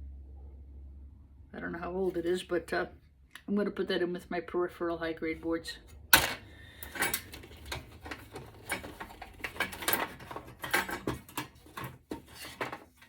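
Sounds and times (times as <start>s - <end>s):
metal parts knocking together: 6.2s - 13.0s.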